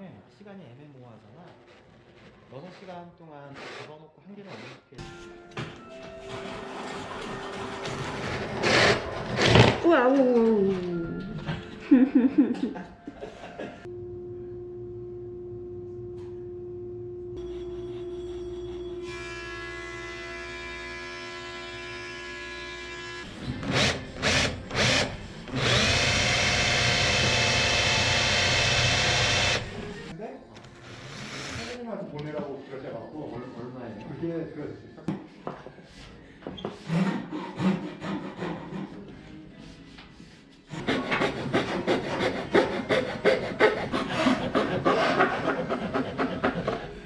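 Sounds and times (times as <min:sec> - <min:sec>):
electric power tool running: 0:20.7 - 0:30.1
hand tool scraping wood: 0:40.7 - 0:46.8.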